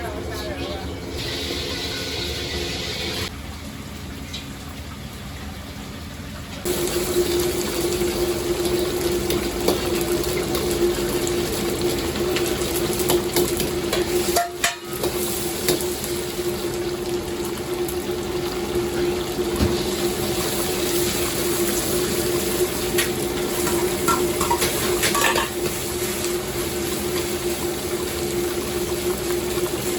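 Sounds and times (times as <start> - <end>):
wok sizzling: 0.0 - 3.3, 6.6 - 29.9
wok scraping: 22.9 - 26.2.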